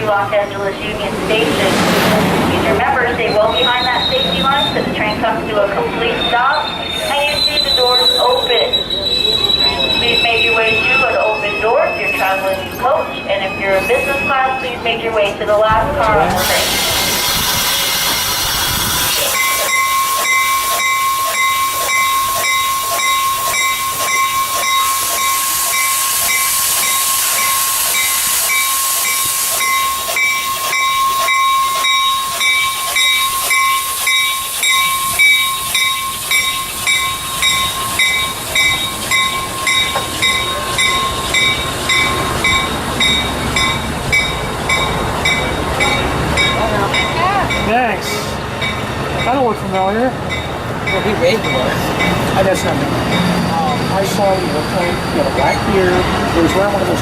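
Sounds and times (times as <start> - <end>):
train hissing rush: 0.0 - 11.8, 15.9 - 57.0
bell ringing steadily: 19.2 - 57.0.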